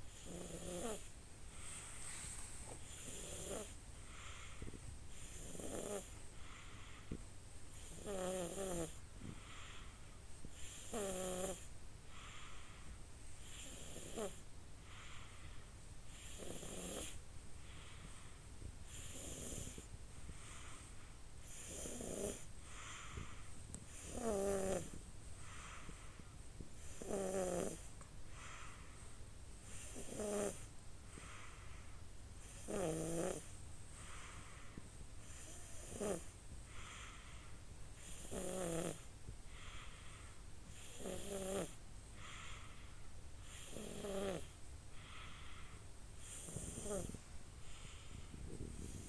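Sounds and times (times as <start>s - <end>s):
baby snoring: 0.1s - 1.1s, 2.8s - 4.5s, 5.1s - 6.1s, 7.8s - 9.0s, 10.5s - 11.7s, 13.4s - 14.4s, 16.1s - 17.2s, 18.9s - 19.9s, 21.4s - 25.0s, 26.8s - 27.9s, 29.7s - 30.7s, 32.4s - 33.5s, 35.2s - 37.1s, 38.0s - 39.1s, 40.8s - 41.8s, 43.4s - 45.4s, 46.2s - 47.2s, 47.8s - 49.0s.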